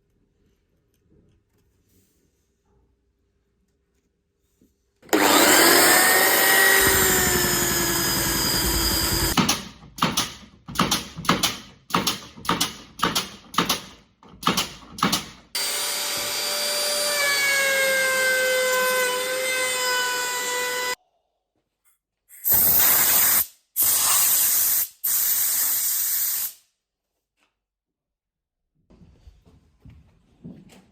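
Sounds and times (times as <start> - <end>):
power tool working wood: 5.1 - 9.4, 15.6 - 21.0.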